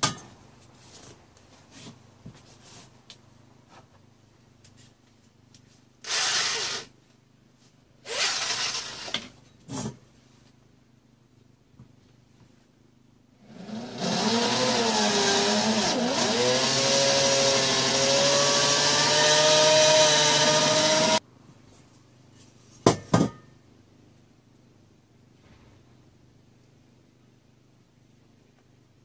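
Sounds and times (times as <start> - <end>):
grinder motor whining: 13.5 - 21.2.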